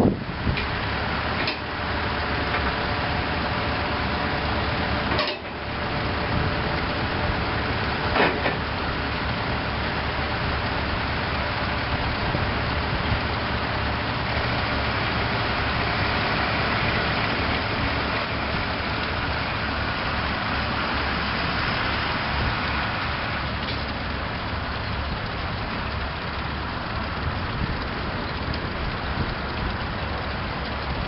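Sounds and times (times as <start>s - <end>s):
diesel engine running: 0.0s - 31.0s.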